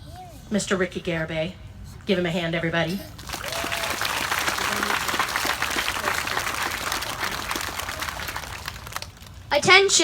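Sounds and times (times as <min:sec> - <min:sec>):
crowd applauding: 0:03.2 - 0:09.4.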